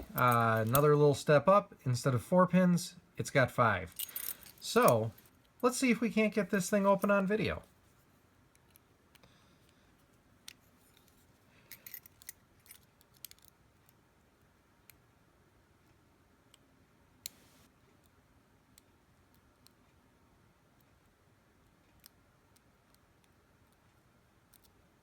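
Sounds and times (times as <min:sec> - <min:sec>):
lock-picking tools clicking: 0:00.0 - 0:00.9, 0:03.9 - 0:05.3, 0:11.7 - 0:13.5.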